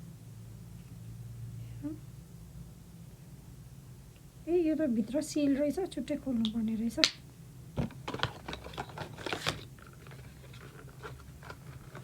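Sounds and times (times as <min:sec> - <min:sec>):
plastic packaging clicks and crinkles: 0:07.8 - 0:12.0.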